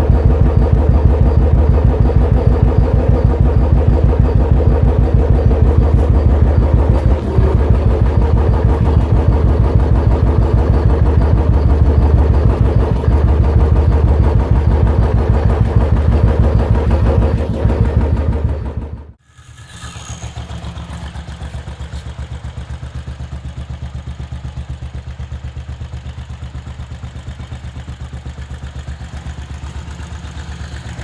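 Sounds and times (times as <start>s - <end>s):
motorcycle engine running: 0.0s - 31.0s.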